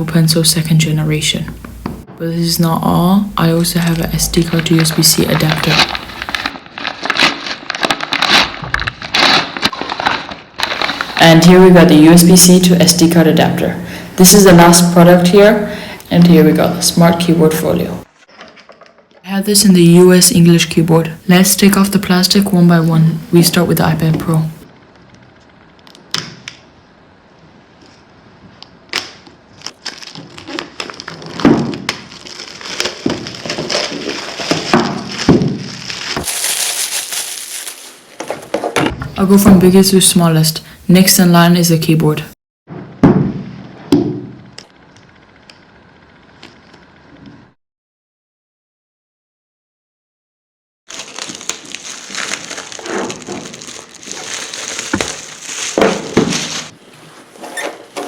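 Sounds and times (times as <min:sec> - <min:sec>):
plastic film crinkling: 0:03.7 - 0:13.6, 0:29.0 - 0:38.8, 0:50.9 - 0:58.0.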